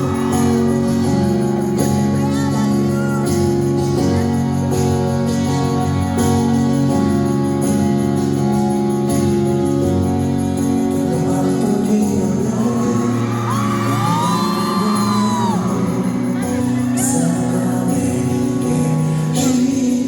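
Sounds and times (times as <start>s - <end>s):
audience screaming: 0.0s - 1.7s, 12.8s - 18.2s
live band playing: 0.0s - 20.0s
person singing: 10.9s - 20.0s.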